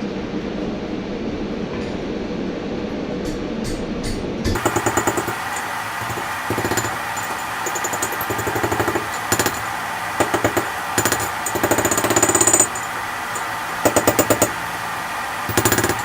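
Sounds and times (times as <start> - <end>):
steady background noise: 0.0 - 16.0
hammer striking steel: 3.2 - 14.7, 15.4 - 16.0.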